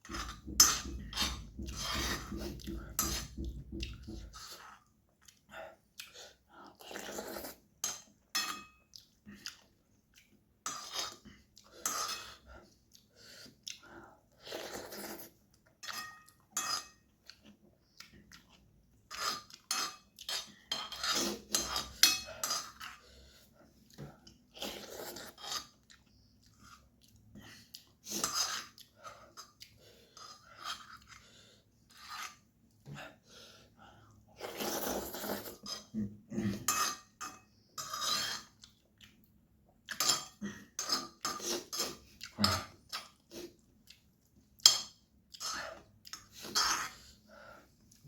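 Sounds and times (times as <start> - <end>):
bowl and utensils knocking: 0.1 - 4.3
chewing noodles: 17.2 - 23.0.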